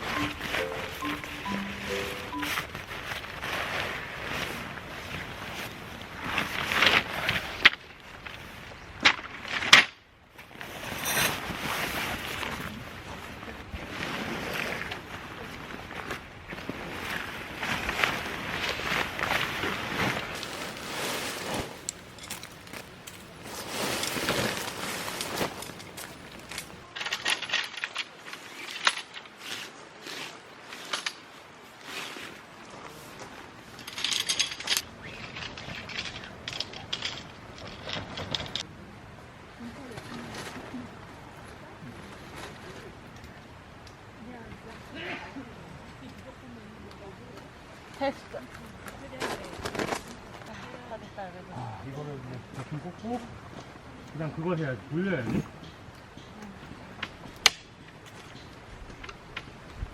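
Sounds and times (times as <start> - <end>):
rustling handling noise: 0.0 - 4.6, 17.9 - 31.2, 33.1 - 38.6
camping gear metallic clinks: 20.4 - 29.3, 33.8 - 38.6.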